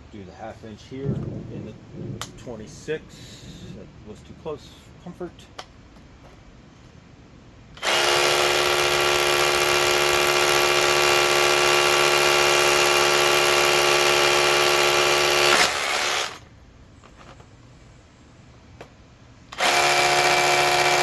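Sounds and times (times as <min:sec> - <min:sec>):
rotary hammer drilling: 0:07.8 - 0:16.4, 0:19.6 - 0:21.0.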